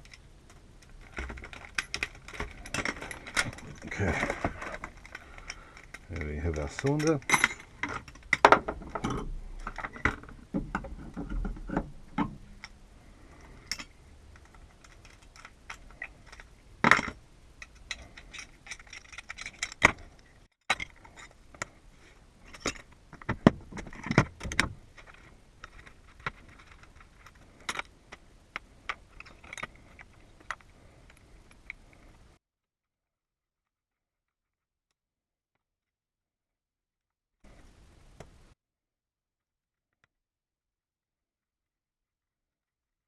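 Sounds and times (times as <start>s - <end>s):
keys and lock parts clicking: 1.0s - 8.4s, 17.6s - 20.2s.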